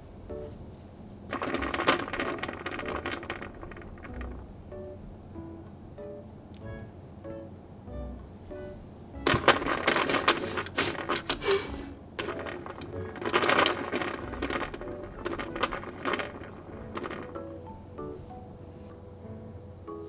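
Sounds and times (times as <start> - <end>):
plastic paddle wheel clicking rattle: 1.3 - 4.6, 9.2 - 18.0.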